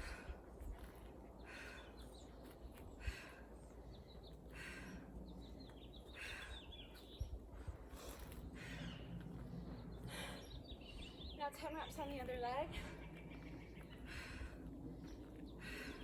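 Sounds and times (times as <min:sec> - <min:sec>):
person breathing hard: 0:00.0 - 0:02.2, 0:02.9 - 0:05.3, 0:06.0 - 0:06.8, 0:13.7 - 0:16.0
small birds chirping: 0:00.0 - 0:16.0.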